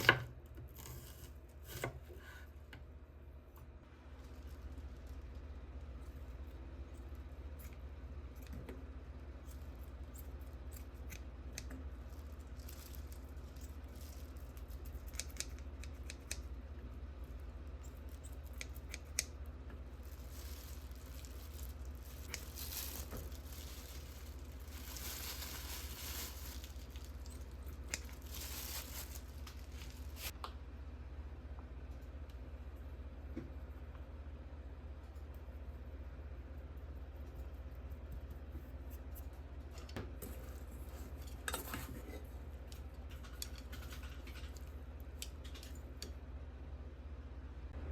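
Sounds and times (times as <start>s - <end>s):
steady low hum: 0.2s - 47.9s
rustling or crinkling: 3.6s - 8.6s, 9.4s - 15.7s, 17.0s - 30.4s.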